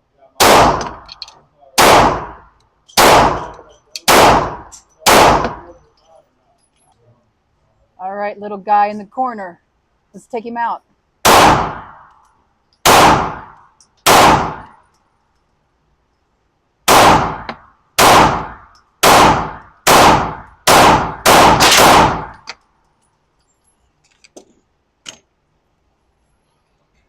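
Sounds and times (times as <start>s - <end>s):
pistol shots: 0.4s - 1.2s, 1.8s - 5.8s, 11.2s - 12.1s, 12.8s - 14.8s, 16.9s - 22.5s.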